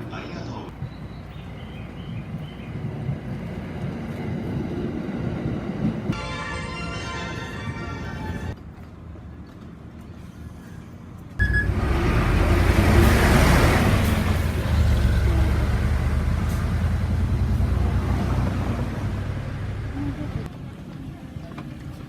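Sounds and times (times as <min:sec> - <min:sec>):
road noise: 0:00.0 - 0:22.0
heavy vehicle engine rumble: 0:09.3 - 0:22.0.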